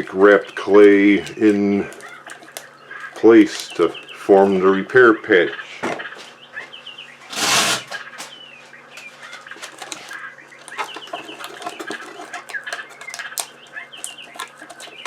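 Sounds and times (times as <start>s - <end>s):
songbirds chirping: 0.0s - 15.0s
adhesive tape pulled off roll: 7.3s - 7.9s.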